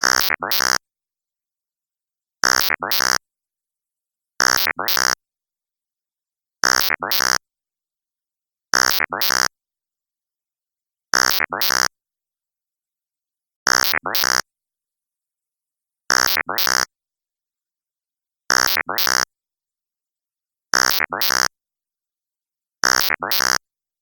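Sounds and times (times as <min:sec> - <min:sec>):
synthesized robot voice: 0:00.0 - 0:00.8, 0:02.4 - 0:03.2, 0:04.4 - 0:05.2, 0:06.6 - 0:07.4, 0:08.8 - 0:09.5, 0:11.2 - 0:11.9, 0:13.7 - 0:14.4, 0:16.2 - 0:16.8, 0:20.8 - 0:21.5, 0:22.9 - 0:23.6.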